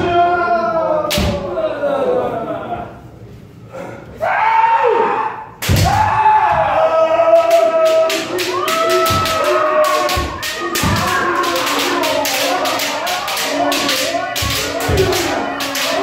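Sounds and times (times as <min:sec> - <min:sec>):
fencers shouting: 0:04.3 - 0:16.0.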